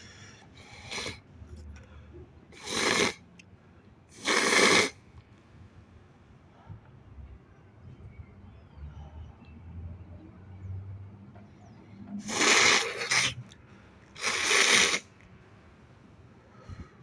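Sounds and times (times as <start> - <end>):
person sneezing: 12.2 - 13.4, 14.2 - 15.0.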